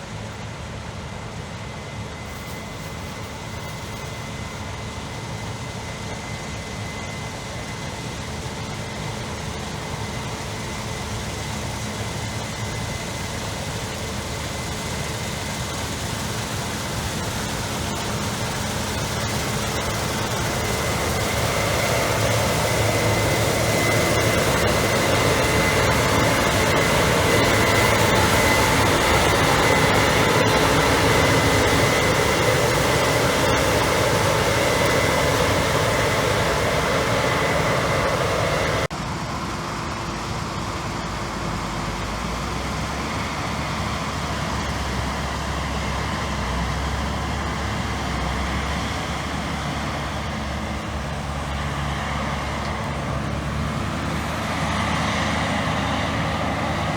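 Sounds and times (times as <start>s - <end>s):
combine and tractor engines: 0.0s - 56.9s
steady machine whine: 0.0s - 56.9s
low engine rumble: 10.3s - 56.9s.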